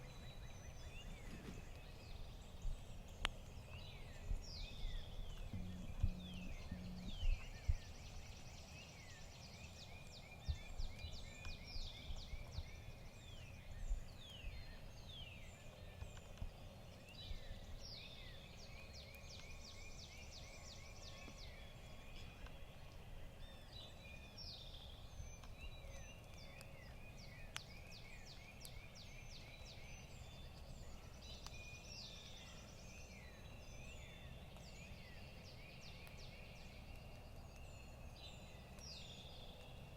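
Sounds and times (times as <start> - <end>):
birds singing and calling: 0.0 - 39.9
low outdoor rumble: 0.8 - 8.7.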